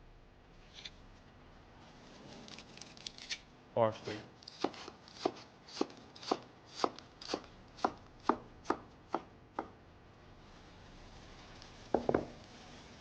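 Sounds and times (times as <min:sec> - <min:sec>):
knife chopping on cutting board: 0:04.6 - 0:09.8.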